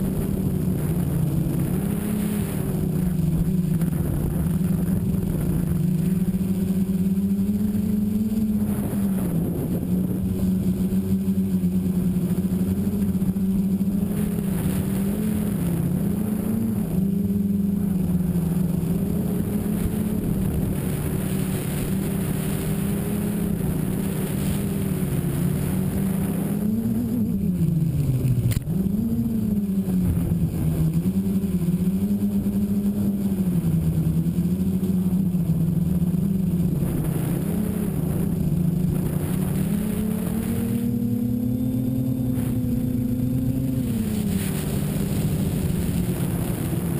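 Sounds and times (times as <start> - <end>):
drone motors and propellers buzzing: 0.0 - 46.9.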